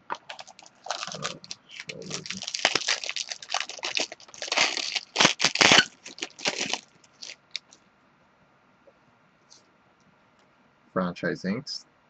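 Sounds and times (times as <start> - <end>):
trading cards rustling and scraping: 0.0 - 7.8.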